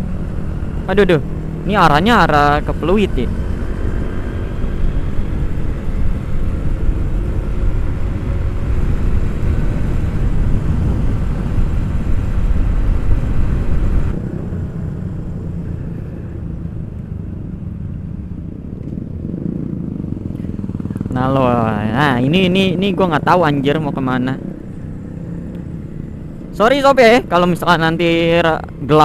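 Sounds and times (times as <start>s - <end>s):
wind rushing over microphone: 0.0s - 21.2s
motorcycle engine: 0.0s - 29.0s
road noise: 0.0s - 29.0s.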